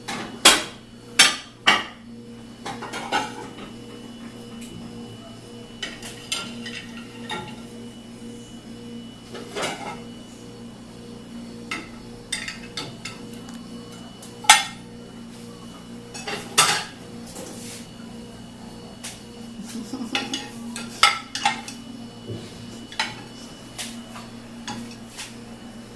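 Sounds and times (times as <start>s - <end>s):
faint steady hum: 0.0s - 25.9s.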